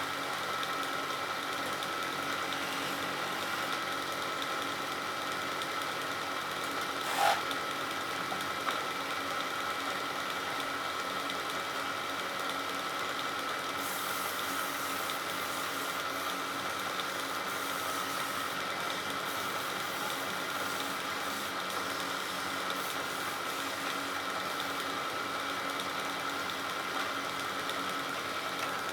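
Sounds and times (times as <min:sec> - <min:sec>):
wood lathe humming: 0:01.9 - 0:05.1, 0:07.0 - 0:07.5.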